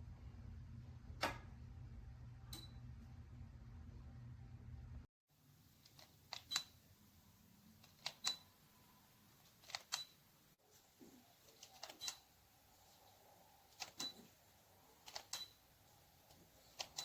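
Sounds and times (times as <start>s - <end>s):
low steady hum: 0.0s - 7.9s
sharp mechanical clicks: 9.6s - 10.2s, 15.0s - 15.6s, 16.8s - 17.0s.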